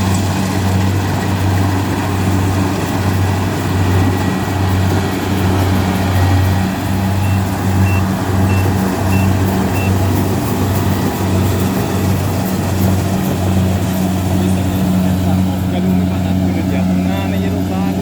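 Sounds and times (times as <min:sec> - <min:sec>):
diesel engine humming: 0:00.0 - 0:18.0
short high beeps: 0:07.1 - 0:10.0.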